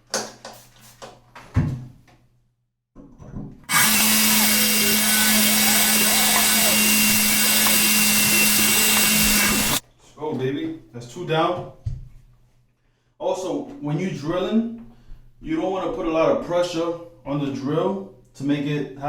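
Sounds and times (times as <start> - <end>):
power drill grinding through tile: 3.7 - 9.8.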